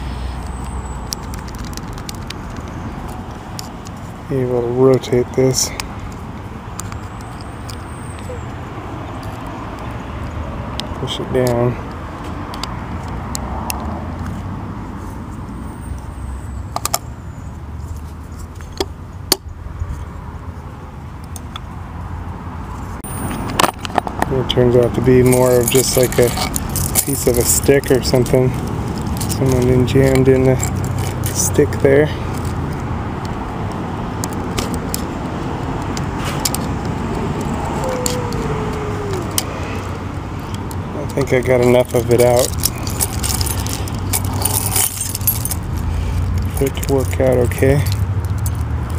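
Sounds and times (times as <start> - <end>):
sharp clicks and taps of a lock: 12.2 - 14.3.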